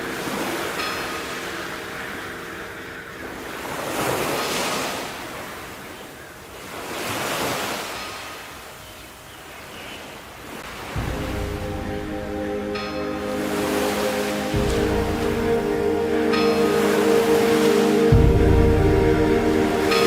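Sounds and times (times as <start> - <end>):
calm music with soft tones: 0.0 - 5.2, 10.9 - 20.0
sea waves washing in: 0.0 - 8.9, 10.4 - 20.0.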